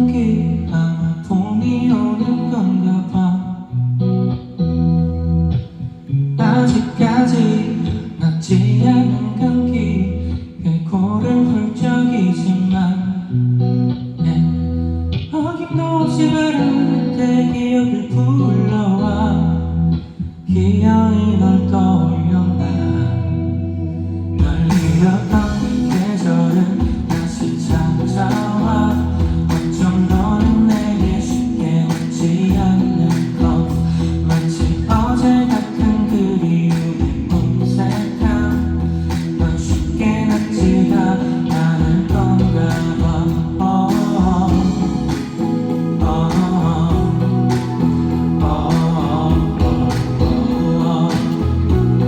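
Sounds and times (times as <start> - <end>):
person singing: 0.0 - 4.6, 5.6 - 52.0
live pop ballad band: 0.0 - 52.0
drums: 24.4 - 52.0.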